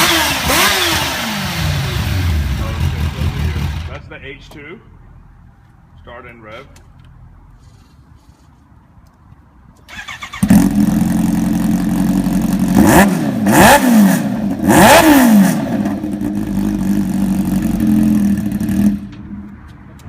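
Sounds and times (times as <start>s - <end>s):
motorcycle engine idling and revving: 0.0s - 4.1s, 9.9s - 20.0s
motorcycle starter cranking: 9.9s - 10.7s.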